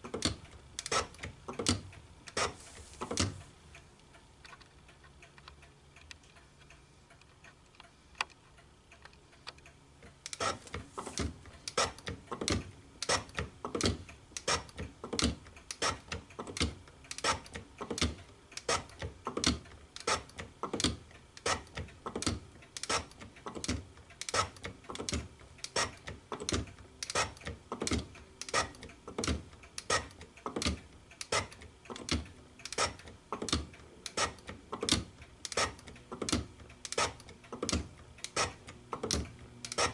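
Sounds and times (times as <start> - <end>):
hand shaper clicking: 10.2 - 39.9.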